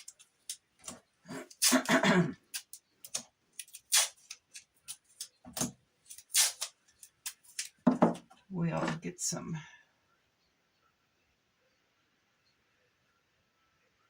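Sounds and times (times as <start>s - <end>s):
tape pulled off roll and torn: 2.6s - 7.8s.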